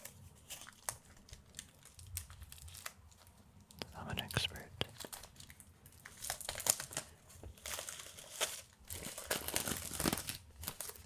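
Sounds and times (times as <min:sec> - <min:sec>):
wrapping crinkling and tearing: 0:00.0 - 0:11.0.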